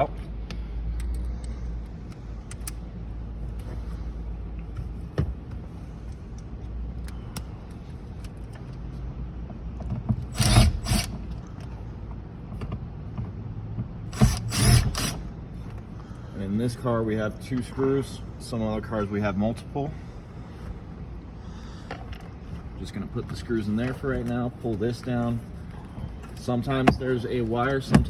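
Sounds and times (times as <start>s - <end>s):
low steady hum: 0.0s - 28.0s
cordless driver backing out screws: 10.2s - 11.3s, 14.1s - 15.2s.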